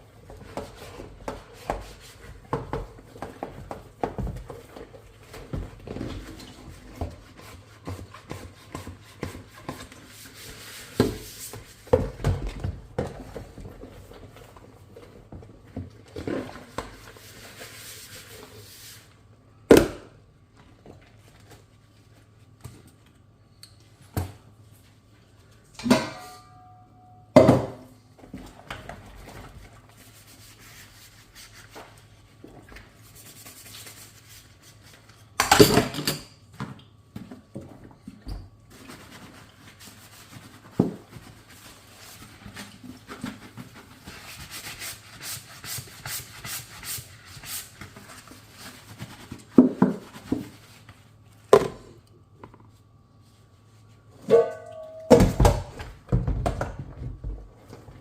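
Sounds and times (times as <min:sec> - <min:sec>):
soft rubbing and swishing: 0:52.7 - 0:54.1.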